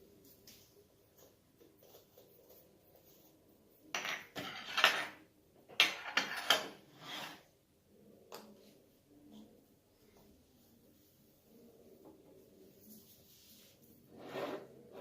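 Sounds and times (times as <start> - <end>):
spoon scraping a bowl: 3.9 - 5.2, 5.8 - 7.5, 14.1 - 15.0.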